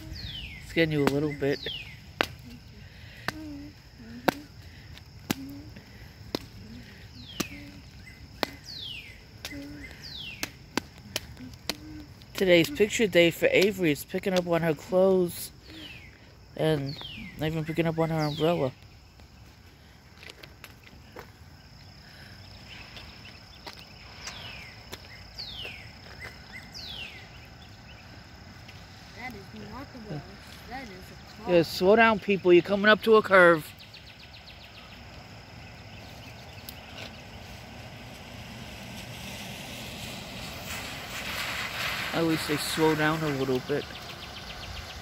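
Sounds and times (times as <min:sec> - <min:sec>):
birds calling: 0:00.0 - 0:19.9, 0:20.9 - 0:28.4, 0:29.2 - 0:37.9, 0:42.1 - 0:45.0
high insect drone: 0:00.0 - 0:45.0.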